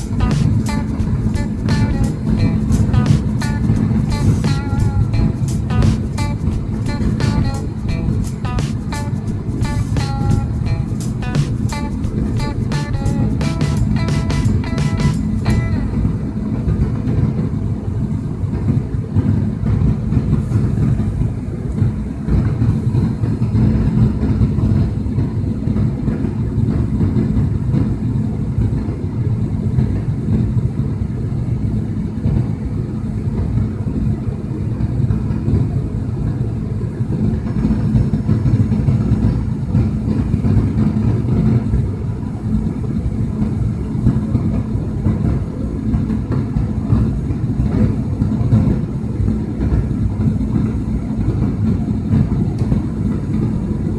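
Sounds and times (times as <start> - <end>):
engine and airflow rumble: 0.0 - 53.9.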